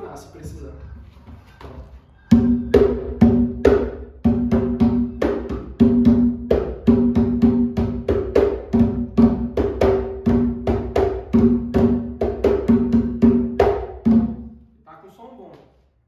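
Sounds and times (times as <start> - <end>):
hand drum played by hand: 2.5 - 14.4.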